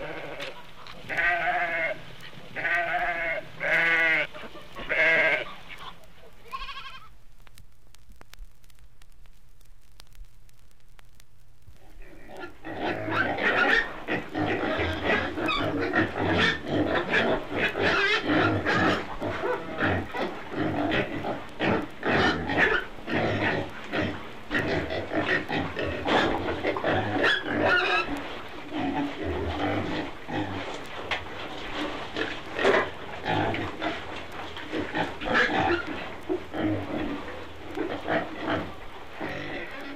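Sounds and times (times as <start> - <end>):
pigs grunting and squealing: 0.0 - 6.0, 11.9 - 39.9.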